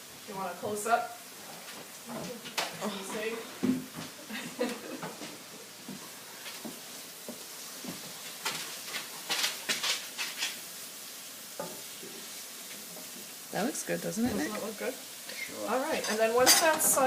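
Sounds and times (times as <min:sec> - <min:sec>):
vegetables sizzling in a frying pan: 0:00.0 - 0:17.0
utensil scraping a pan: 0:14.2 - 0:17.0.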